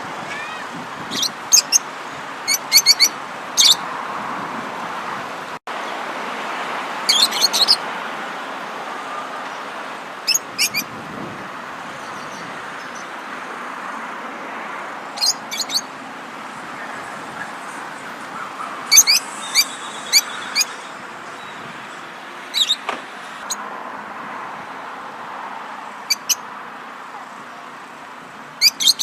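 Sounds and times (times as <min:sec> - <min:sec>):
outdoor ambience hiss: 0:00.0 - 0:28.9
songbird chirping high notes: 0:15.2 - 0:15.9, 0:16.8 - 0:23.6.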